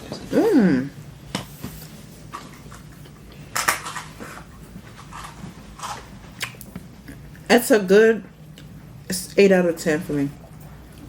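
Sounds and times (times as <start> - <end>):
person chewing bread: 1.9 - 7.5.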